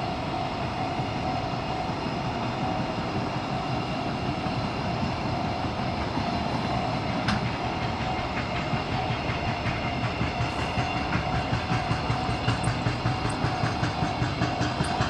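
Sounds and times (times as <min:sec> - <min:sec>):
train wheels rumbling and clattering: 0:00.0 - 0:15.0
crossing warning bell: 0:07.1 - 0:15.0.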